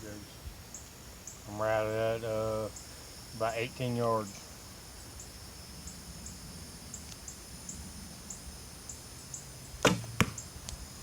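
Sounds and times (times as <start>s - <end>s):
crickets chirping: 0.0s - 11.0s
arrow hitting target: 9.8s - 10.4s.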